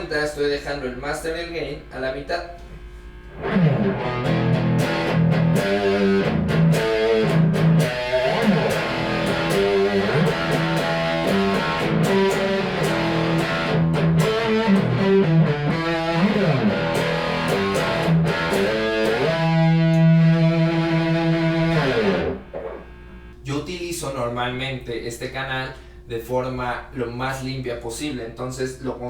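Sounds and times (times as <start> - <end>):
electric guitar riff: 3.3 - 23.4.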